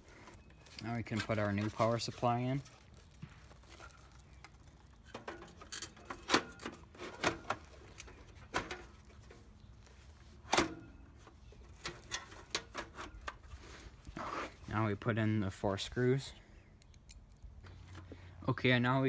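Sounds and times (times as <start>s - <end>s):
clicks and knocks of hardware handling: 5.1s - 9.4s.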